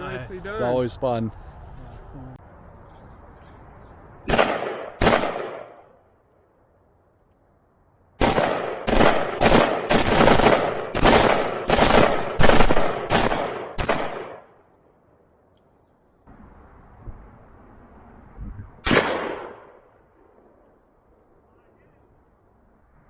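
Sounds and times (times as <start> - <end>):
gunshots with echo: 4.3 - 5.8, 8.2 - 14.5, 18.8 - 19.8.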